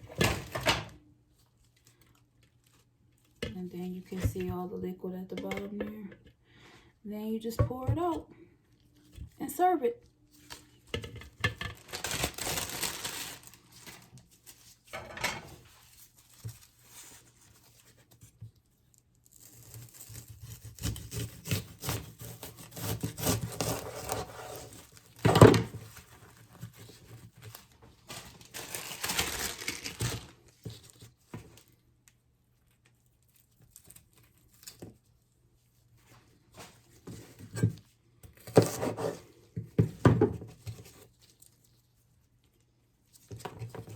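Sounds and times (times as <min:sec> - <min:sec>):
rustling crinkling and tearing: 0:01.2 - 0:03.4, 0:10.0 - 0:14.9, 0:15.5 - 0:38.0, 0:40.5 - 0:43.9.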